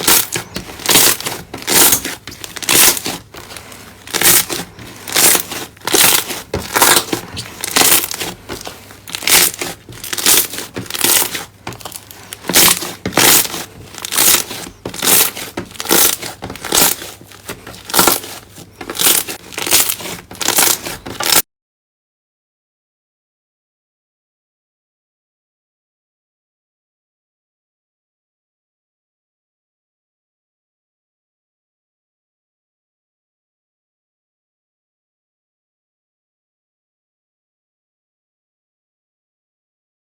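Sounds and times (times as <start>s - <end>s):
slime crackling when squeezed: 0.0s - 3.2s, 4.1s - 17.0s, 17.8s - 21.4s.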